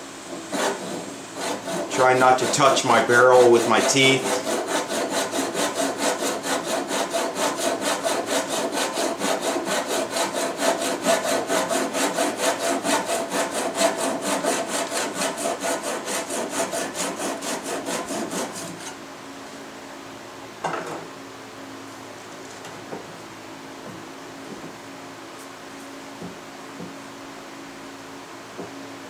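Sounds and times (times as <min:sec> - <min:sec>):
pull saw cutting wood: 0:00.3 - 0:19.0.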